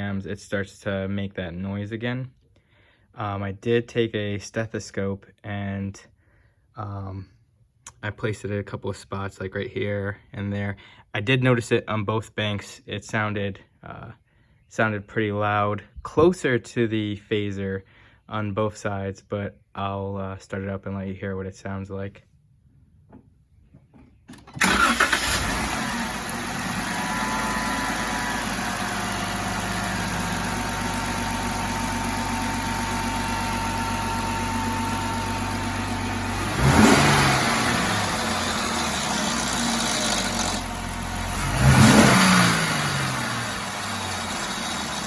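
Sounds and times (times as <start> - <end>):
car engine starting and idling: 24.3 - 45.0
engine rattle: 24.4 - 45.0
engine revving: 24.6 - 45.0.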